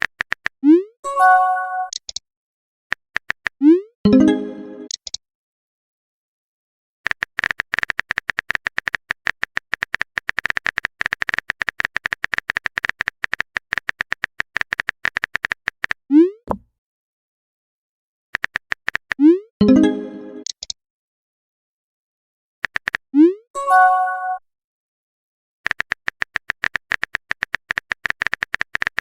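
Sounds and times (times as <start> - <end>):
rapid keyboard typing clicks: 0.0 - 0.6, 2.9 - 3.6, 7.1 - 16.6, 18.4 - 19.2, 22.6 - 23.0, 25.6 - 29.0
rising pop: 16.5 - 16.7.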